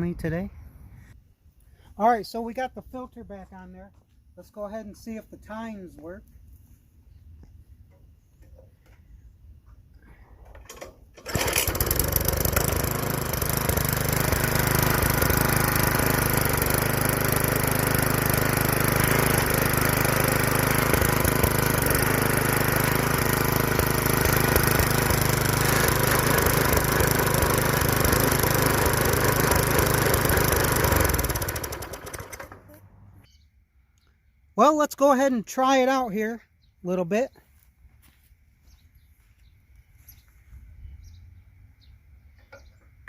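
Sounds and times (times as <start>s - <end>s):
small engine running: 10.7s - 33.2s.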